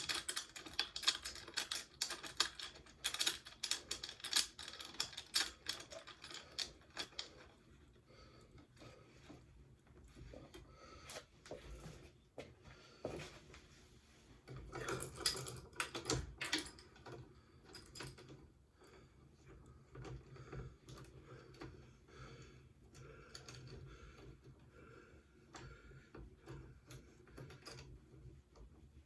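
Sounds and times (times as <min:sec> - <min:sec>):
metal rack clicking and rattling: 0:00.0 - 0:07.4, 0:14.6 - 0:17.2.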